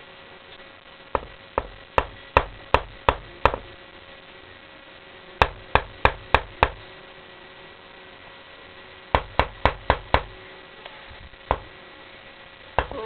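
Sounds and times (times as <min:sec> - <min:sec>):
knocking on hard surface: 0:01.2 - 0:03.7, 0:11.5 - 0:11.7.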